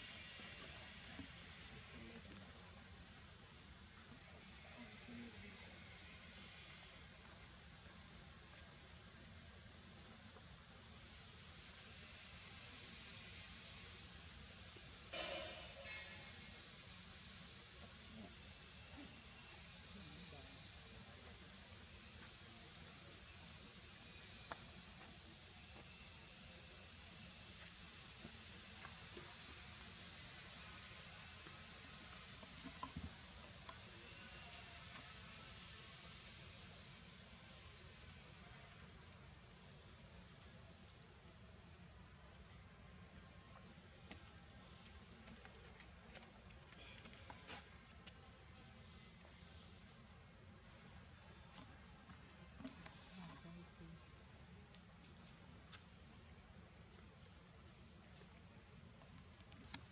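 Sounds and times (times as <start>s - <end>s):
insects droning: 0.0s - 59.9s
faint ticks: 55.6s - 56.0s, 59.3s - 59.9s.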